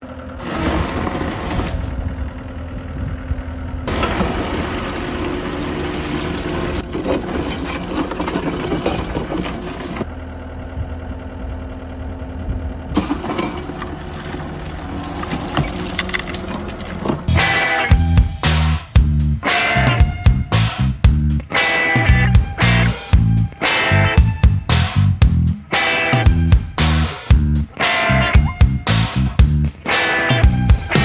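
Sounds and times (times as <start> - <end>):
diesel engine running: 9.8 - 29.8, 30.4 - 31.0.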